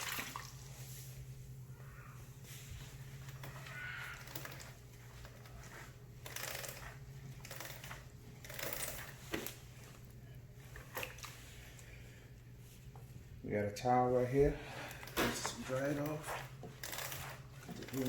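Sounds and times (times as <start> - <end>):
low hum: 0.0 - 13.5.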